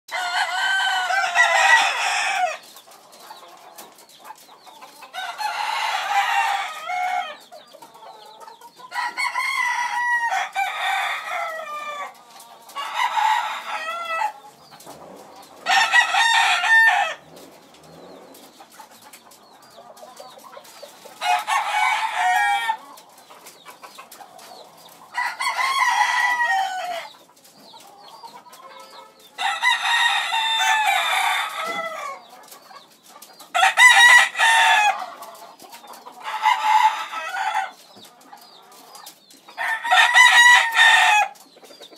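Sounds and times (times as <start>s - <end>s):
rooster crowing: 0.1s - 2.6s, 8.9s - 12.1s, 12.8s - 14.4s, 15.6s - 17.2s, 21.2s - 22.8s, 25.1s - 27.1s, 29.4s - 32.2s, 33.5s - 35.1s, 39.6s - 41.4s
chickens clucking: 0.1s - 41.9s.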